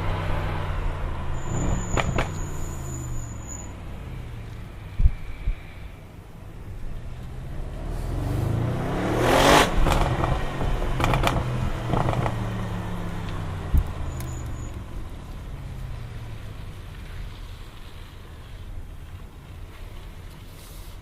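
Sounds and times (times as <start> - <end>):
car engine accelerating: 0.0 - 5.6, 6.6 - 18.6
exhaust crackles and pops: 1.4 - 2.7, 9.5 - 21.0.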